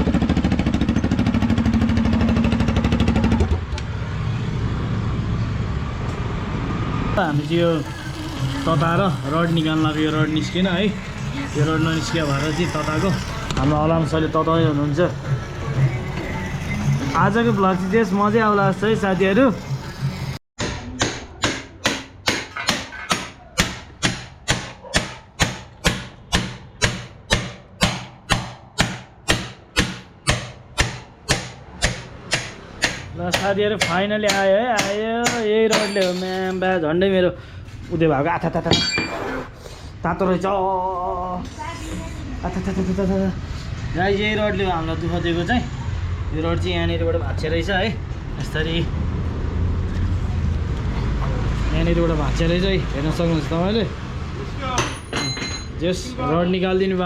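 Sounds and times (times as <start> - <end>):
motorcycle engine without silencer: 0.0 - 20.4
hammer striking metal: 20.6 - 36.6, 38.7 - 39.4, 54.8 - 55.8.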